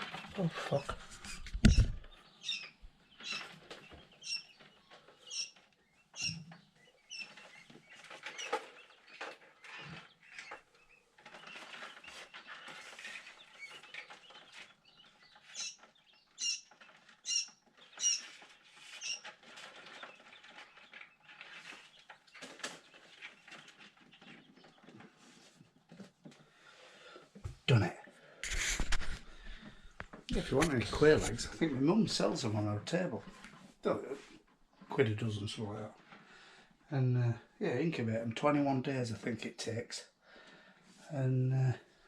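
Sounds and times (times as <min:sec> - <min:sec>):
quail chicks peeping: 0:00.0 - 0:26.9, 0:28.4 - 0:34.0
rustling and scratching: 0:00.0 - 0:36.3.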